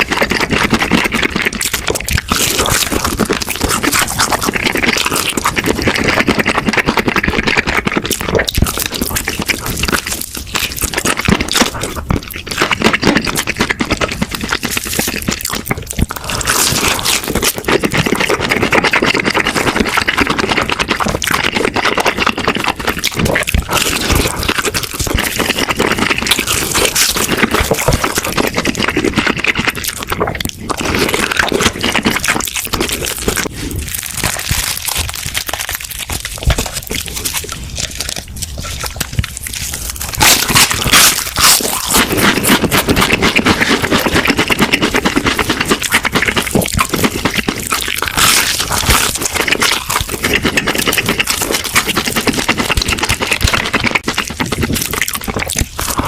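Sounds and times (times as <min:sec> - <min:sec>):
crunching fried chicken: 0:00.0 - 0:56.0.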